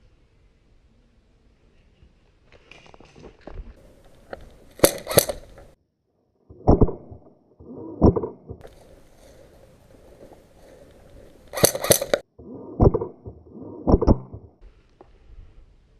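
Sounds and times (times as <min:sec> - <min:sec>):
airsoft gun shots: 0:04.3 - 0:05.8, 0:11.5 - 0:12.2
gear knocking and bumping: 0:08.1 - 0:12.2.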